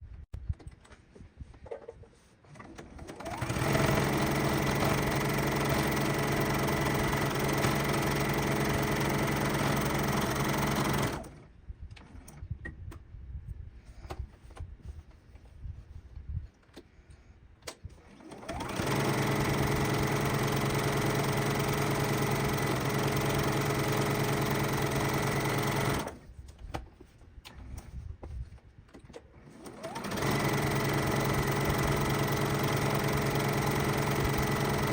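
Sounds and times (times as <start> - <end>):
sewing machine stitching: 2.5 - 12.4, 18.0 - 26.2, 29.4 - 34.9.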